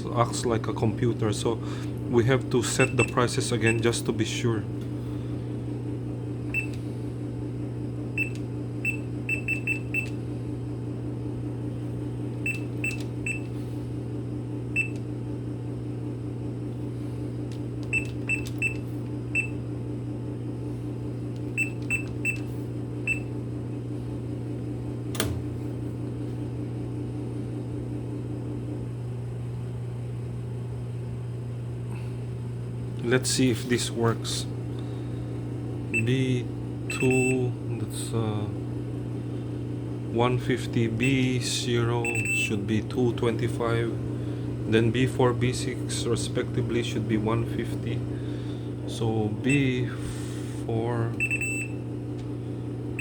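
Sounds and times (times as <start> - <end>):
machine humming: 0.0 - 53.0
short high keypad beeps: 42.1 - 42.5.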